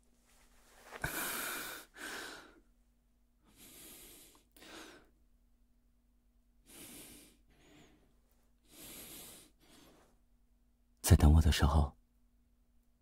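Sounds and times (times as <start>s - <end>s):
man breathing close to microphone: 0.8s - 2.7s, 3.4s - 5.2s, 6.6s - 10.2s.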